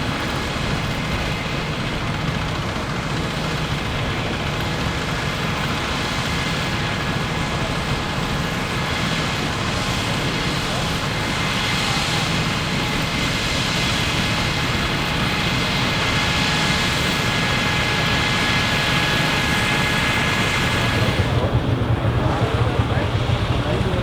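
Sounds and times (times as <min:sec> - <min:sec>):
diesel tractor running: 0:00.0 - 0:24.0
threshing machinery whine: 0:00.0 - 0:24.0
low uneven rumble: 0:20.7 - 0:24.0.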